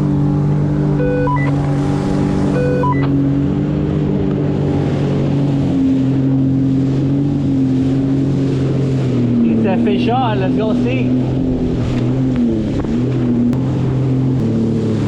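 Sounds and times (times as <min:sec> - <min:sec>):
jet ski engine running: 0:00.0 - 0:15.0
stepped electronic beeps: 0:01.0 - 0:01.6, 0:02.5 - 0:03.2.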